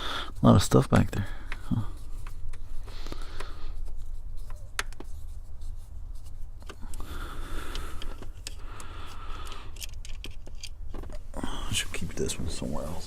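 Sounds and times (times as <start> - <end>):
clicks of small parts: 7.7 - 11.2.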